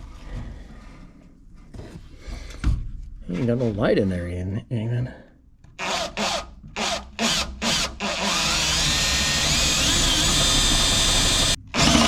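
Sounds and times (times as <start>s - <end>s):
power drill boring sheet metal: 5.8s - 12.0s.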